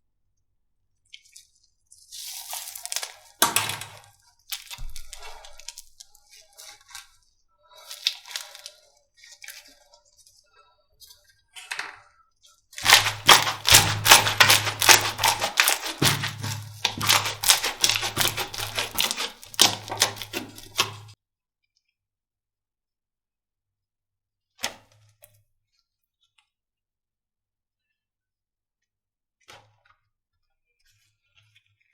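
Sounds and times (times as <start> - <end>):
slime crackling and popping: 2.2 - 7.0, 7.8 - 8.7, 12.8 - 21.2.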